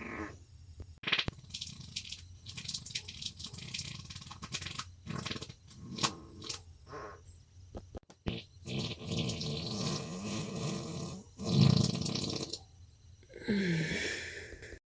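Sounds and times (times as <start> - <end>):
person moaning: 13.3 - 14.8
person passing gas: 13.3 - 14.8.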